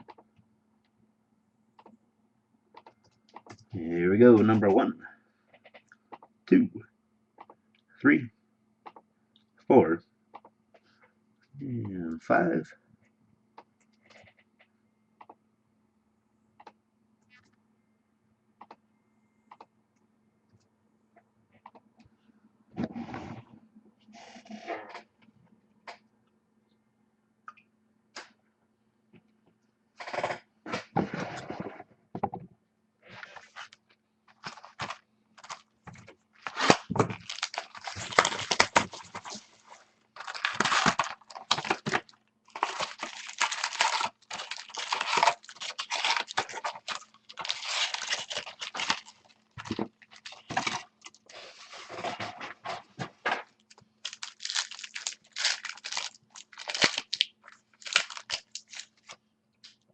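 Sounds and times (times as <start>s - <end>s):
faint steady hum: 0.0s - 59.9s
packaging torn and crumpled: 34.4s - 35.6s, 36.4s - 39.6s, 40.2s - 51.3s, 53.6s - 59.2s.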